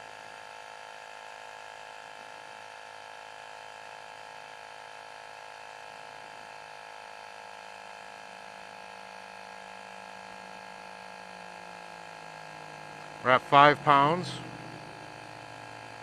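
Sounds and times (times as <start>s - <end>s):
tire inflator compressor buzzing: 3.4s - 16.0s.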